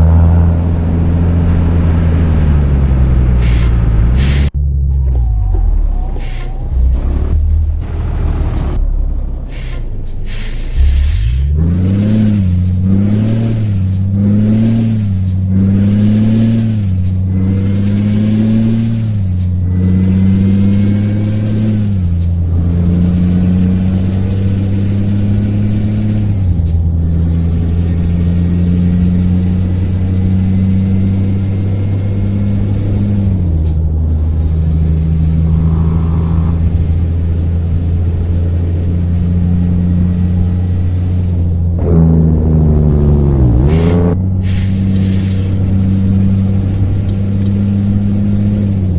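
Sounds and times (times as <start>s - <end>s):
diesel engine revving: 0.0s - 48.9s
high whistle: 3.5s - 8.8s.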